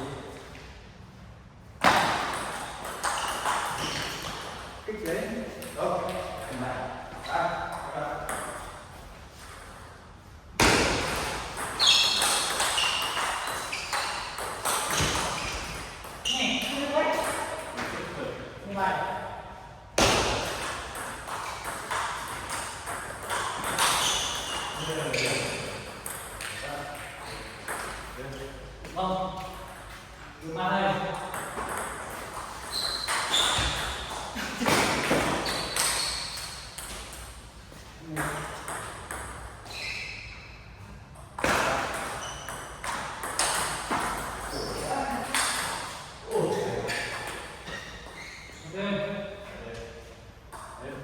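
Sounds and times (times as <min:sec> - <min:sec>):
table tennis ball hits: 0:01.8 - 0:04.6, 0:10.6 - 0:18.0, 0:20.0 - 0:28.2, 0:31.1 - 0:37.3, 0:41.2 - 0:47.7
shoe squeaks: 0:02.6 - 0:04.5, 0:11.6 - 0:17.3, 0:23.2 - 0:27.9, 0:32.4 - 0:34.4, 0:35.2 - 0:37.2, 0:39.6 - 0:41.0, 0:42.1 - 0:43.5, 0:44.5 - 0:49.4.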